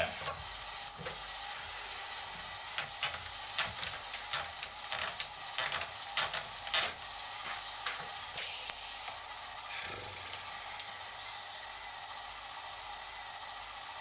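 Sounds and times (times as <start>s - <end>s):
steady hiss: 8.3s - 10.4s.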